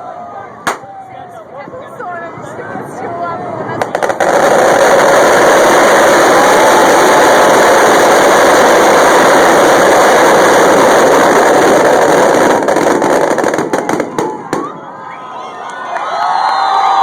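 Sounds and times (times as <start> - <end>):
fireworks crackling and banging: 0.6 - 1.2, 3.7 - 14.9.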